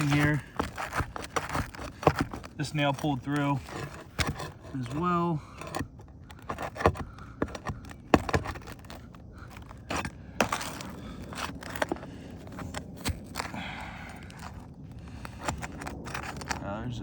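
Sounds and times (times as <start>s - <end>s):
flat bar scraping under shingles: 0.0s - 17.0s.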